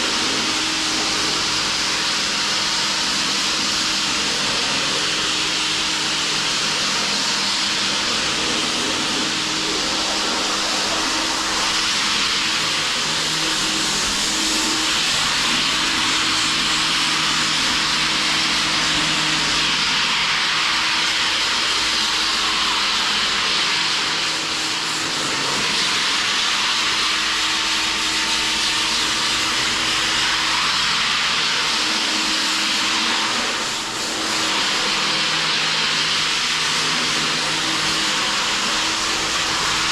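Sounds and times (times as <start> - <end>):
motor running with airy hiss: 0.0 - 39.9.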